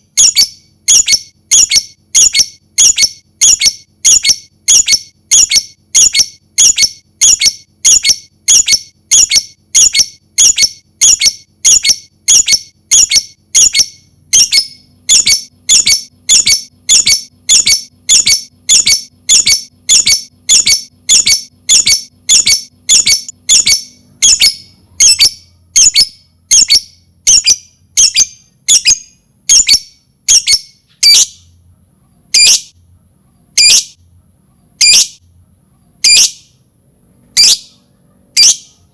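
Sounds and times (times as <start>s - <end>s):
bird chirping: 0.0s - 31.6s, 32.3s - 32.8s, 33.6s - 36.6s, 37.3s - 38.9s.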